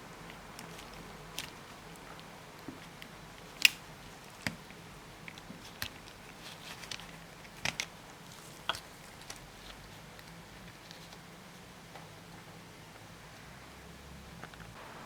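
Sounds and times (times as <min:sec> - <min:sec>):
hands handling plastic and metal parts: 0:00.3 - 0:11.2.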